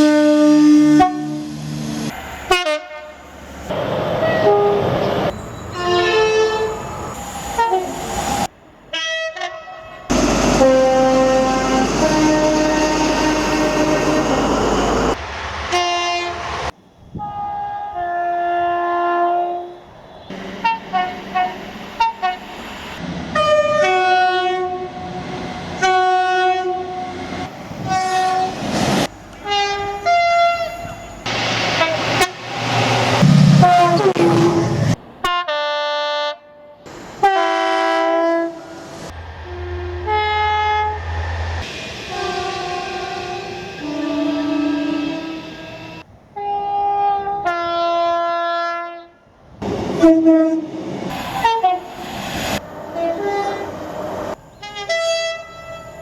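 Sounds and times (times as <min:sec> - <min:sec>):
train horn blasts: 0:00.0 - 0:01.6, 0:02.5 - 0:03.2, 0:04.2 - 0:05.0, 0:05.7 - 0:06.8, 0:07.6 - 0:07.9, 0:08.9 - 0:14.5, 0:15.7 - 0:16.5, 0:17.2 - 0:22.5, 0:23.3 - 0:25.2, 0:25.8 - 0:27.2, 0:27.8 - 0:28.6, 0:29.4 - 0:31.2, 0:31.8 - 0:32.5, 0:33.2 - 0:41.2, 0:42.1 - 0:49.3, 0:50.0 - 0:50.8, 0:51.4 - 0:51.9, 0:53.0 - 0:53.7, 0:54.6 - 0:56.0.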